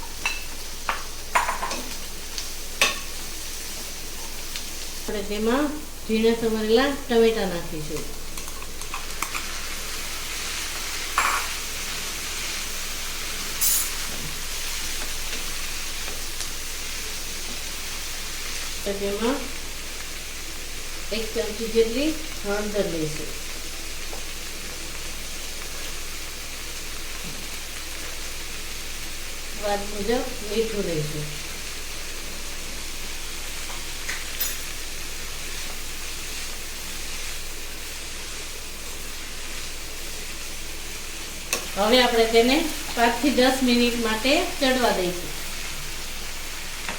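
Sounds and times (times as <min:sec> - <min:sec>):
vegetables sizzling in a pan: 0:00.0 - 0:46.9.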